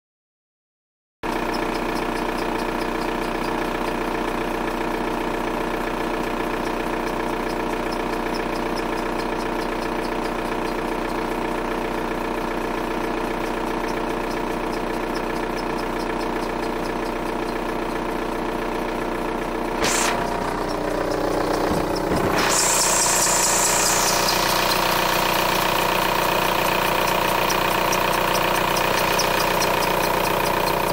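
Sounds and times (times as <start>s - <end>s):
diesel engine idling: 1.3s - 30.9s
faint regular ticking: 12.7s - 18.5s, 20.2s - 30.9s
short hiss: 19.8s - 25.0s.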